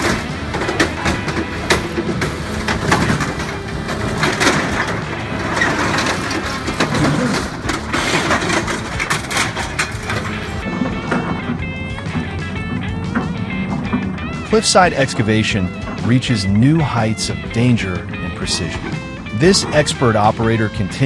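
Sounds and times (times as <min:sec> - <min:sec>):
metal tearing cracks and snaps: 0:00.0 - 0:10.6
excavator engine running: 0:00.0 - 0:21.0.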